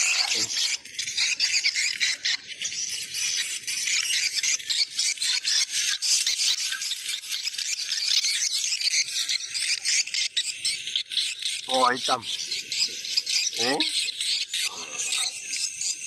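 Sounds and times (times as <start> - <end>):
bird call through loudspeaker: 0.0 - 1.8, 11.6 - 12.4, 13.4 - 13.9.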